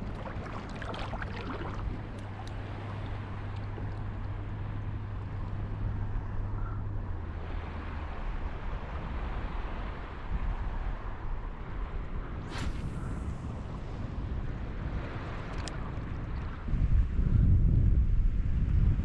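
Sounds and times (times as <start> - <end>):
surf: 0.0 - 6.4, 7.1 - 17.0
boat motor droning: 0.0 - 12.4
wind: 0.0 - 19.0.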